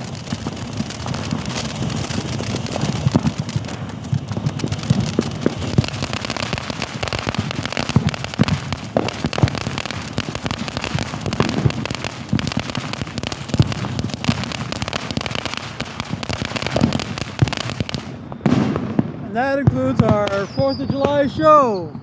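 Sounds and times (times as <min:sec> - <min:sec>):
fireworks bangs and crackles: 0:00.0 - 0:22.0.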